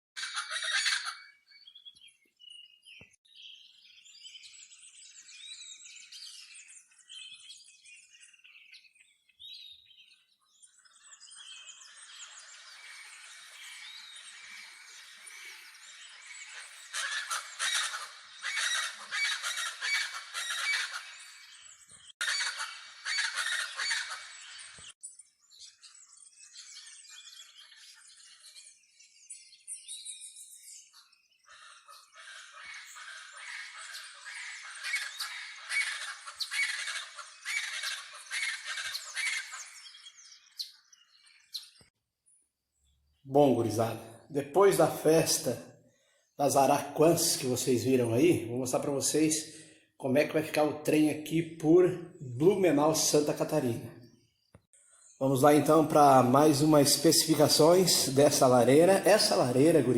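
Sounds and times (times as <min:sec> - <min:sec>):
flock of birds calling: 0:00.2 - 0:01.8, 0:03.9 - 0:25.0, 0:31.0 - 0:41.9, 0:54.8 - 0:59.9.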